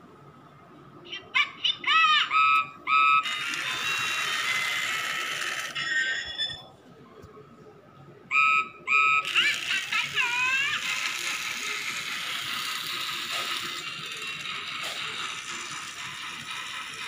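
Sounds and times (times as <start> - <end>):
toy train electronic whistle: 2.3 - 6.7, 8.3 - 17.0
toy motor and gears whirring: 3.2 - 6.6, 9.2 - 17.0.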